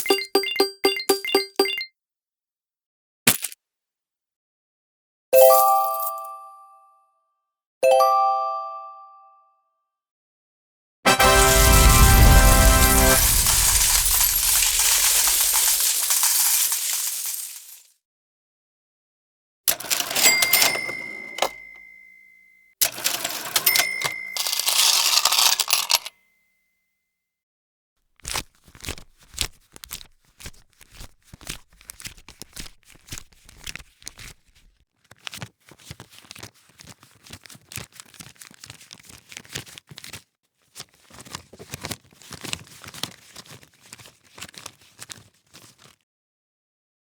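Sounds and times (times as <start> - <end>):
cash register bell ding: 0.0 - 1.9, 19.7 - 26.1
banknotes riffled: 11.1 - 17.4
cash drawer clattering: 12.5 - 17.8, 19.7 - 21.9, 22.8 - 26.1.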